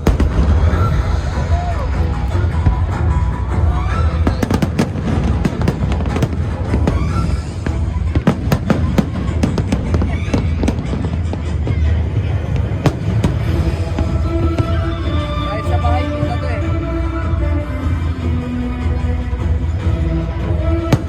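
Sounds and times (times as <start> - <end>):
fireworks cracking and banging: 0.0 - 16.1
music playing: 0.0 - 21.0.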